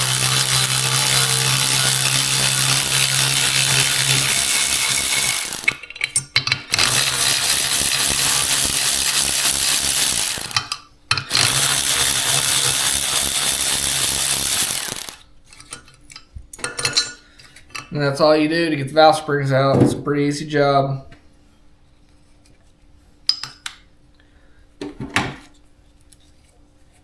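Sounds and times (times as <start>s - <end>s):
power tool running: 0.0s - 5.9s, 6.7s - 15.2s.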